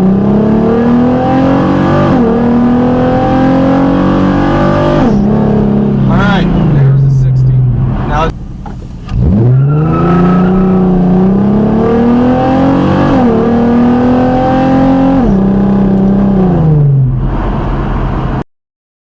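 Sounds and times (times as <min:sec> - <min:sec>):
car engine accelerating: 0:00.0 - 0:18.4.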